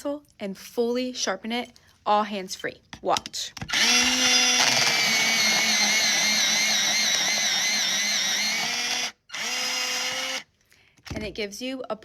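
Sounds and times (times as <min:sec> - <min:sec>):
electric pencil sharpener whining: 0:03.7 - 0:10.5.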